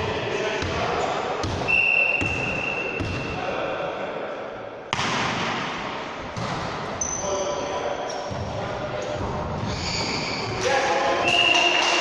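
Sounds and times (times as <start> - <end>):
voices in a sports hall: 0.0 - 12.0
referee's whistle: 1.6 - 3.3, 11.2 - 12.0.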